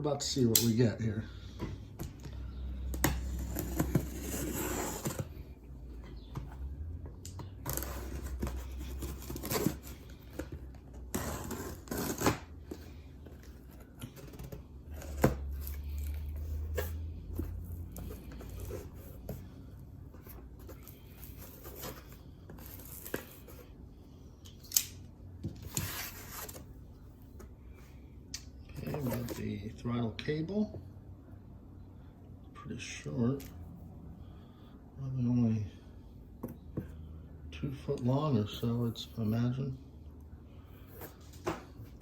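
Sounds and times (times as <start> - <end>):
tape and packaging tearing: 11.1 - 12.5.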